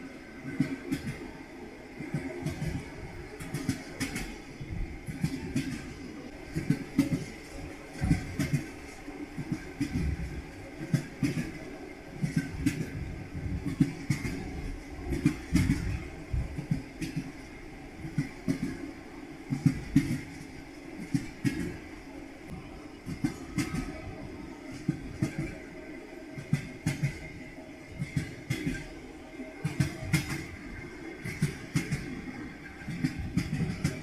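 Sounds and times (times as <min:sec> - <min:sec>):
train wheels clattering over rail joints: 0:02.0 - 0:18.8, 0:19.5 - 0:21.9, 0:26.4 - 0:29.0, 0:29.6 - 0:34.0.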